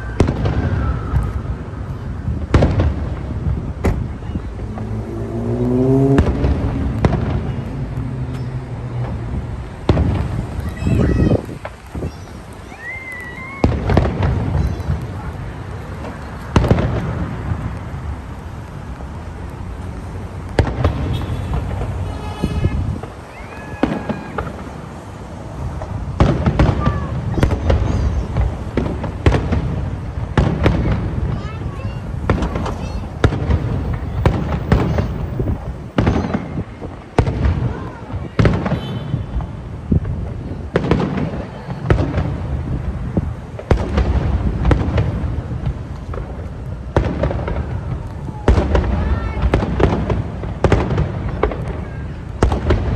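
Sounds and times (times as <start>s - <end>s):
low rumbling echo: 0.0s - 23.2s
fireworks bangs: 0.0s - 52.9s.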